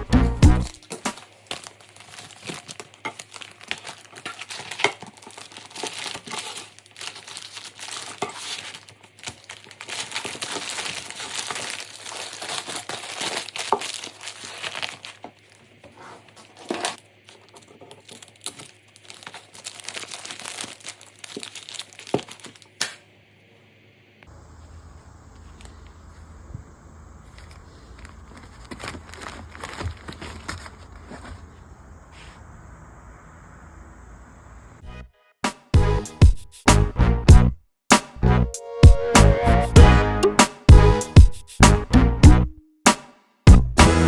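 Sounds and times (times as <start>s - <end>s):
wrapping material crinkling: 0.6s - 23.0s, 27.3s - 32.3s
wrapping tearing: 0.6s - 23.0s, 27.4s - 31.4s.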